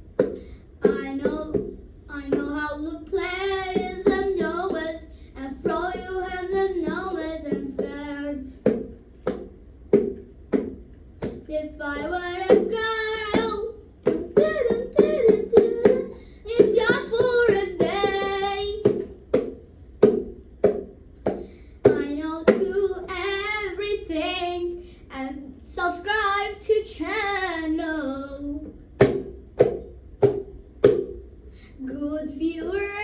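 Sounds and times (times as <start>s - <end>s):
child singing: 0.8s - 8.8s, 11.3s - 19.1s, 21.8s - 28.8s, 31.8s - 33.0s.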